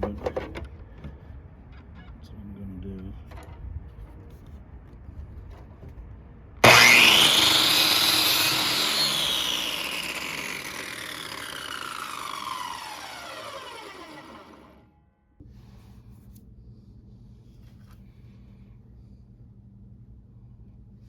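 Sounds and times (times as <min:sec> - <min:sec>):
power saw motor whining: 0:06.6 - 0:14.9.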